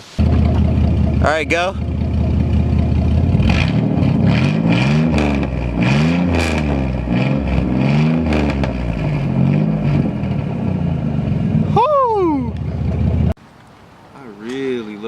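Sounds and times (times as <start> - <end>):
vehicle engine revving: 0.2 - 13.4.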